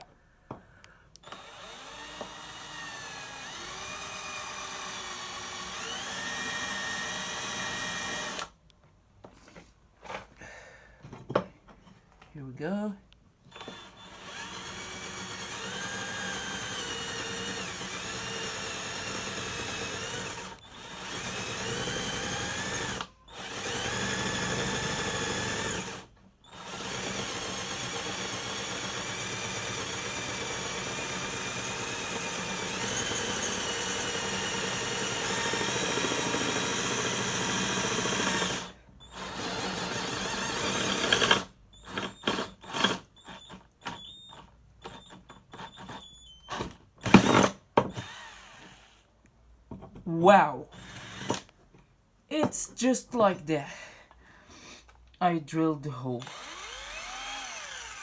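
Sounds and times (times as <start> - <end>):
cordless drill boring through metal: 1.2 - 8.5, 13.5 - 49.1, 50.7 - 51.5, 56.2 - 58.0.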